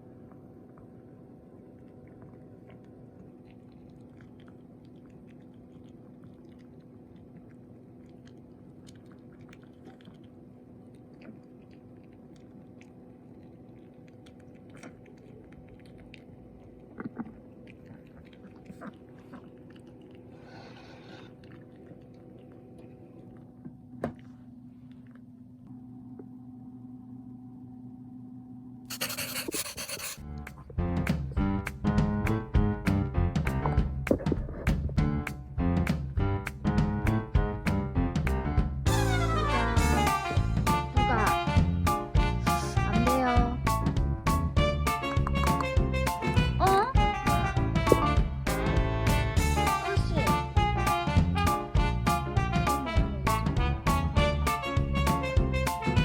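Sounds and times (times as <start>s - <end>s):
low hum: 0.0s - 36.4s
dog chewing a treat: 0.3s - 24.3s
music: 30.2s - 56.0s.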